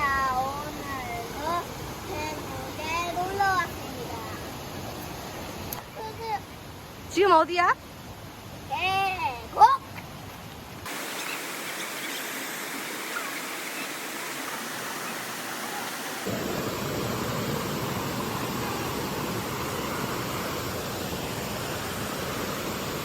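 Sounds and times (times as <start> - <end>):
stream rushing over rocks: 0.0 - 7.3, 7.9 - 23.0.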